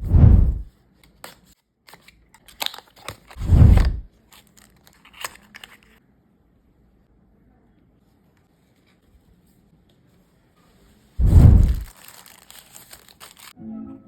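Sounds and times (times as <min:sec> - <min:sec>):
packaging clicks snips and crinkles: 0:01.1 - 0:03.4, 0:04.3 - 0:06.0, 0:11.8 - 0:13.6.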